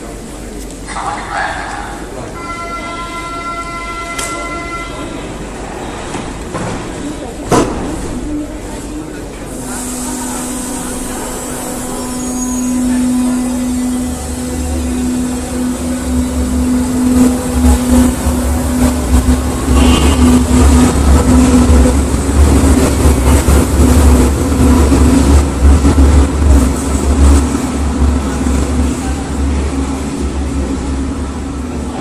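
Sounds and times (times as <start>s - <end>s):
subway train rumbling and whining: 0.0s - 32.0s
high wheel squeal: 11.1s - 13.9s.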